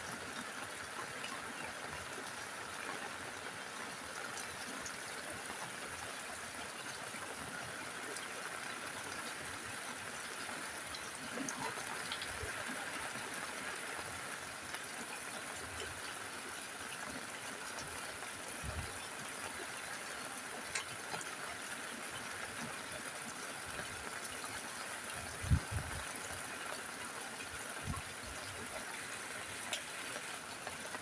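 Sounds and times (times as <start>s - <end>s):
rain falling on a roof: 0.0s - 31.0s.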